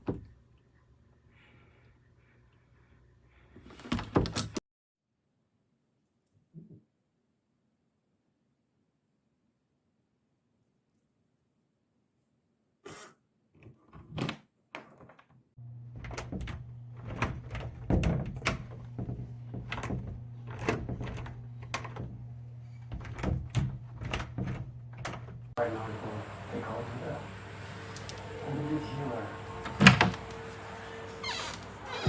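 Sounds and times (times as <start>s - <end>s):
door lock and handle clicking: 27.7s - 28.4s.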